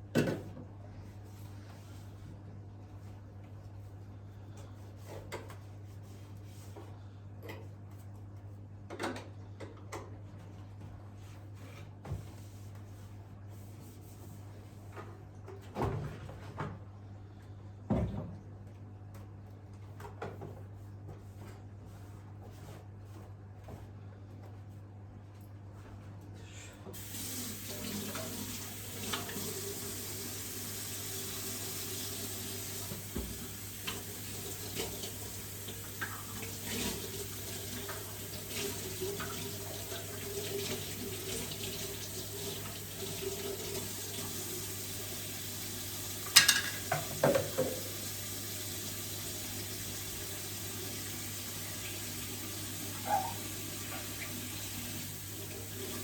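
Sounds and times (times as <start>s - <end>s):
tap water running into sink: 27.0s - 56.0s.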